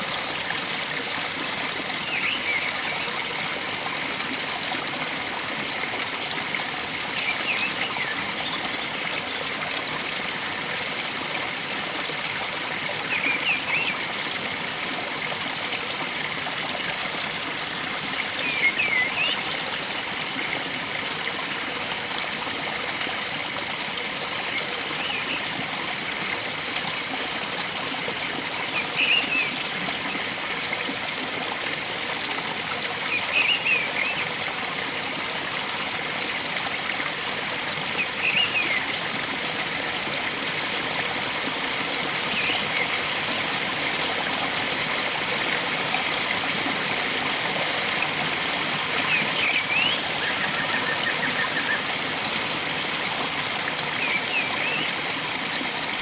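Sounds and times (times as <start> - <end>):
stream water flowing: 0.0 - 56.0
bird calls: 49.0 - 52.8.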